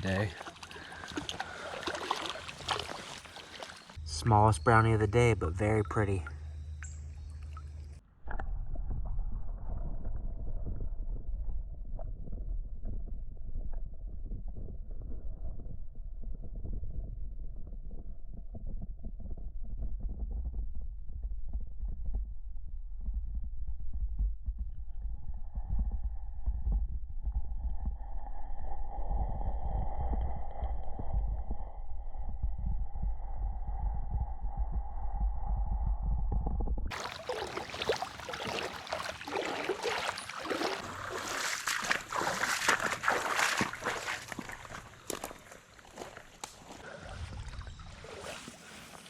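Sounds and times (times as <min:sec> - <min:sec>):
creek water running and splashing: 0:00.0 - 0:04.0, 0:36.9 - 0:49.0.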